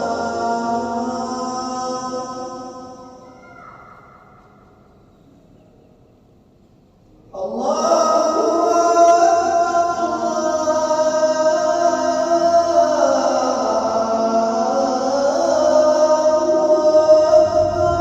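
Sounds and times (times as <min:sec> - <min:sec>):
man chanting call to prayer: 0:07.4 - 0:18.0.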